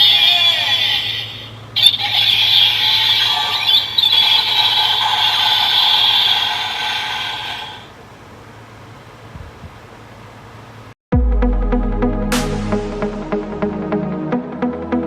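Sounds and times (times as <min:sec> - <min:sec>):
toy electronic sound effect: 0:00.0 - 0:07.9.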